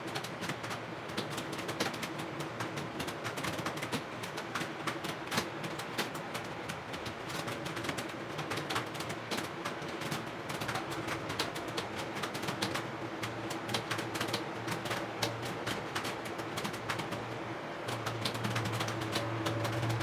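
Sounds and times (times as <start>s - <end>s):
keyboard typing clatter: 13.6s - 17.3s, 17.9s - 20.0s.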